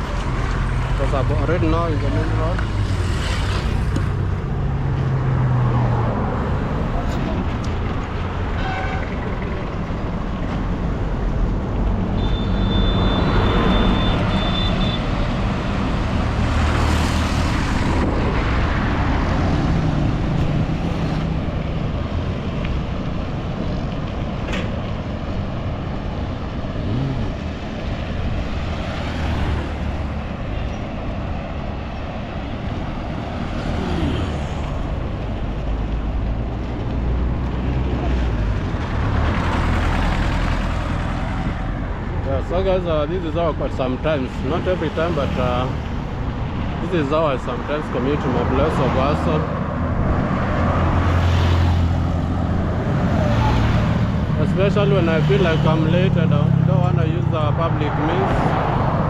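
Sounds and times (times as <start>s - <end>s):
road traffic rumble: 0.0s - 59.0s.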